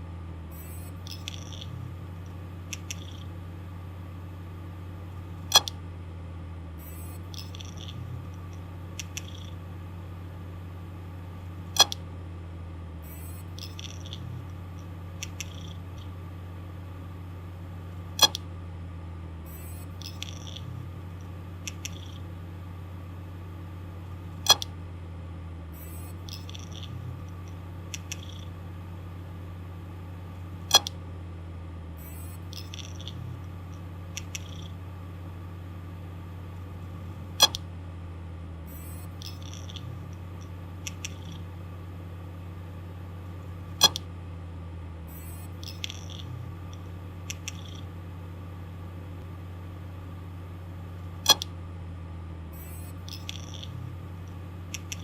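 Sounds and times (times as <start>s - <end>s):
hard drive humming: 0.0s - 55.0s
hard drive clicking: 0.6s - 3.4s, 4.6s - 5.8s, 6.8s - 9.8s, 11.6s - 12.1s, 13.1s - 16.2s, 18.0s - 18.5s, 19.5s - 22.4s, 24.3s - 24.8s, 25.8s - 28.6s, 30.5s - 31.0s, 32.0s - 34.9s, 35.9s - 37.7s, 38.7s - 41.9s, 43.4s - 44.2s, 45.1s - 48.0s, 51.1s - 51.6s, 52.6s - 55.0s.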